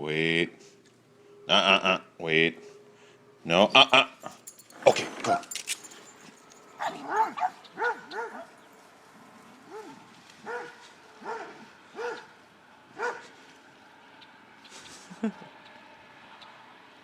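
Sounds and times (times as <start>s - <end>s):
dog barking: 6.8s - 8.5s, 9.7s - 12.3s, 13.0s - 13.3s.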